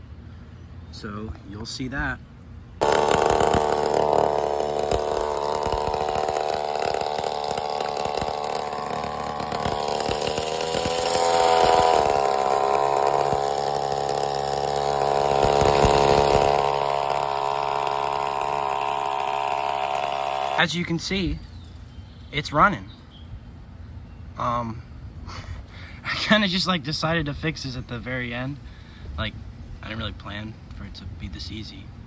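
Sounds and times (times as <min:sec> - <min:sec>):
small gasoline engine revving: 0:02.8 - 0:21.0.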